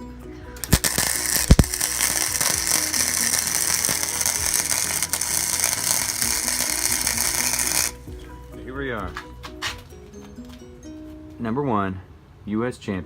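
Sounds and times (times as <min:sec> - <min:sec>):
electric welder crackling: 0:00.6 - 0:08.1.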